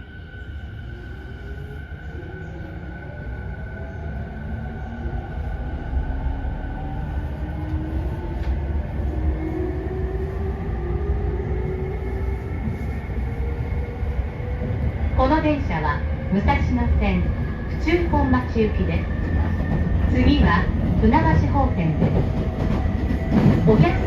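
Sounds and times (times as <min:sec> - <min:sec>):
wheels rumbling on rails: 0:06.4 - 0:24.0.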